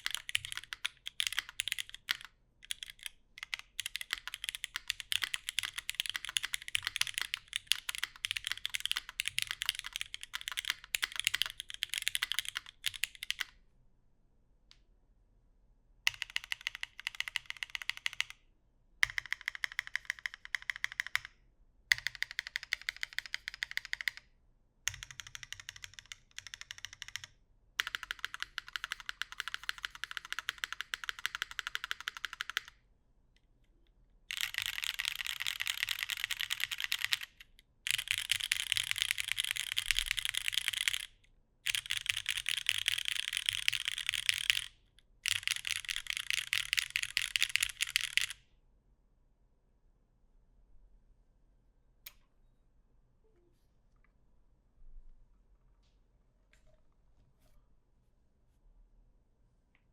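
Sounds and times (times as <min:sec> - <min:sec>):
mechanical keyboard typing: 0:00.0 - 0:13.6, 0:16.1 - 0:18.4, 0:19.0 - 0:21.3, 0:21.9 - 0:24.3, 0:24.9 - 0:32.7, 0:34.3 - 0:41.1, 0:41.7 - 0:48.4.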